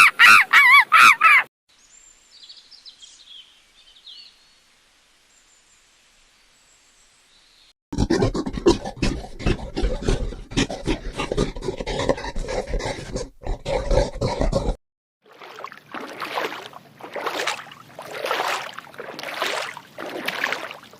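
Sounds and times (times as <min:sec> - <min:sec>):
rapid rough animal pulses: 0:07.9 - 0:14.8.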